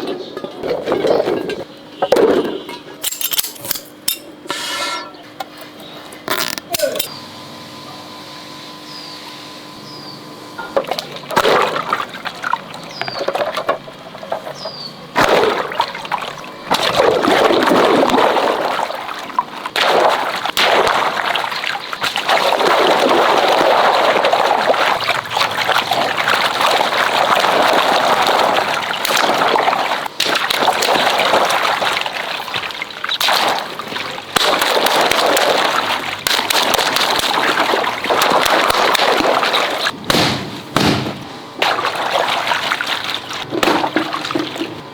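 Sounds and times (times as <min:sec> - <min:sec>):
water pouring and splashing: 0:10.6 - 0:40.0, 0:41.6 - 0:44.9
sharp knocks: 0:40.1 - 0:41.2.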